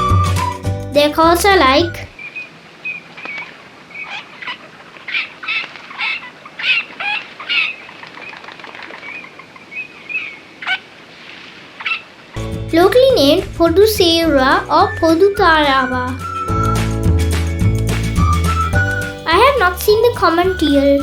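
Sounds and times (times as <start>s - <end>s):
duck calling high notes: 17.9s - 21.0s.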